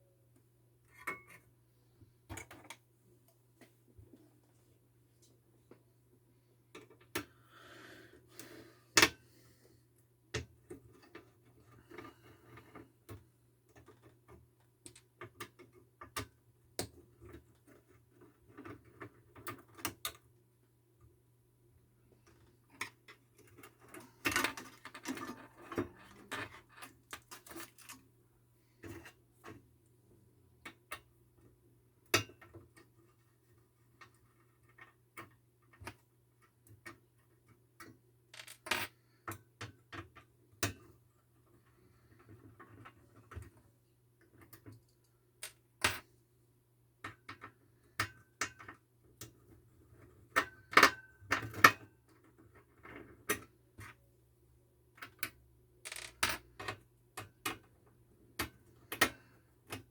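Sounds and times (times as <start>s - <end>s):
small tools clicking and tapping: 22.7s - 28.0s.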